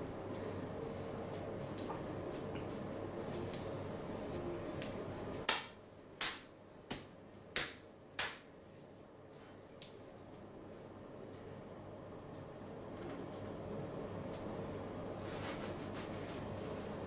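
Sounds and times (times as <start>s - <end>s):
hand slaps on bare skin: 5.5s - 8.5s.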